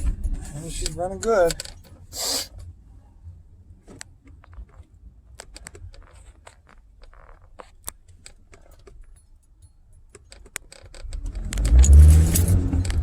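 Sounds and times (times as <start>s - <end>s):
light clicks and rattles in car: 0.0s - 2.7s, 3.8s - 13.0s
car engine idling and accelerating: 0.0s - 8.8s, 10.7s - 13.0s.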